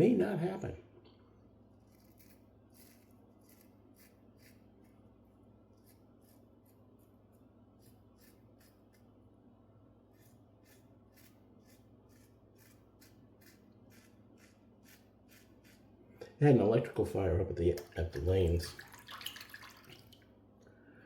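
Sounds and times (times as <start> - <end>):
razor scraping stubble: 1.7 - 9.1, 10.1 - 15.9.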